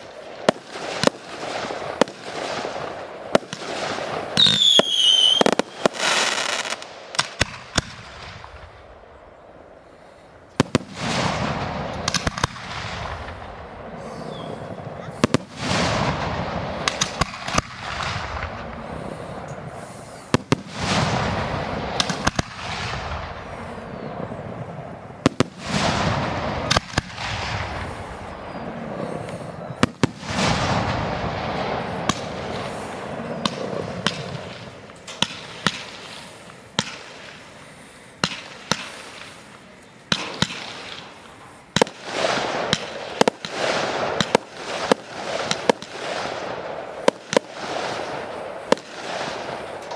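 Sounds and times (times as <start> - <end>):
firework bangs: 0.0 - 9.2, 10.1 - 49.9
firework crackling and hissing: 0.0 - 49.9.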